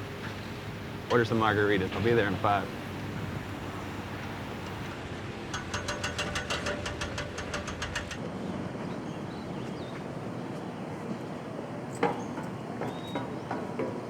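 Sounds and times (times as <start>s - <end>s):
low engine rumble: 0.0s - 8.5s.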